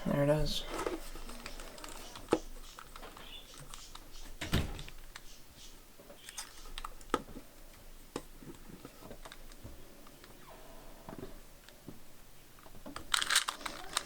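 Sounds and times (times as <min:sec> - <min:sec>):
puzzle cube clicking: 0:13.0 - 0:14.0.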